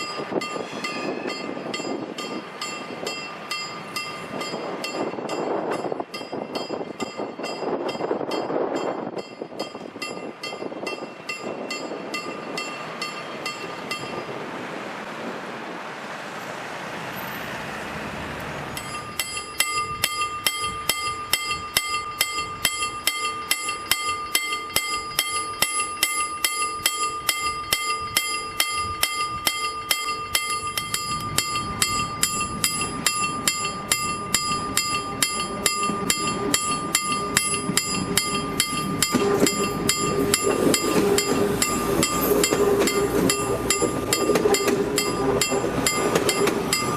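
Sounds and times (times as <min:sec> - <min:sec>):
train rumbling past: 0:00.0 - 0:46.9
level crossing bell ringing: 0:18.8 - 0:46.9.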